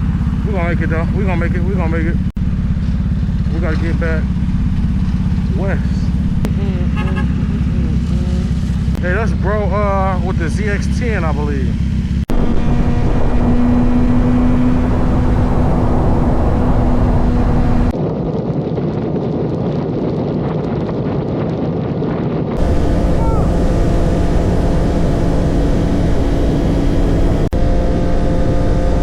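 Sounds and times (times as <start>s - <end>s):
motorcycle engine cruising: 0.0s - 18.0s, 22.6s - 29.0s
wind rush on microphone: 12.3s - 29.0s.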